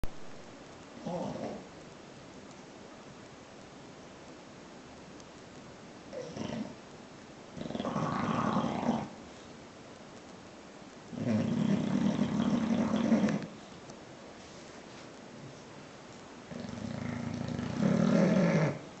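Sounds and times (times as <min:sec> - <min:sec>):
dog snoring: 0:01.0 - 0:01.6, 0:06.1 - 0:06.8, 0:07.6 - 0:09.2, 0:11.1 - 0:13.6, 0:16.5 - 0:18.9.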